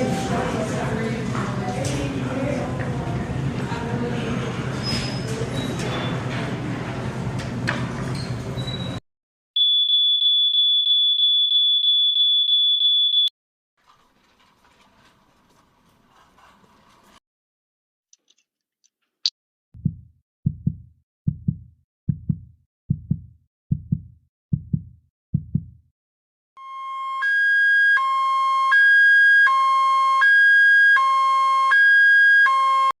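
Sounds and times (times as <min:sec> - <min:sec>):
pulsing electronic alarm tone: 0:26.6 - 0:32.9.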